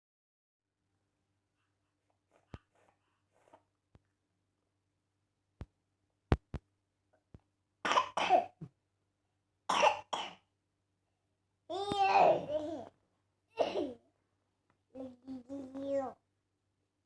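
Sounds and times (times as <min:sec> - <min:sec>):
child coughing: 0:07.9 - 0:08.6, 0:09.7 - 0:10.4, 0:12.0 - 0:12.8, 0:13.6 - 0:14.0.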